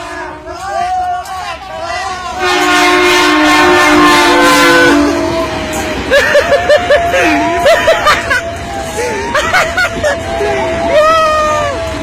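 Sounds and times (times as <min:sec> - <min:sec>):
multi-tone horn chord: 0:02.4 - 0:05.4
warbling horn: 0:02.4 - 0:06.0.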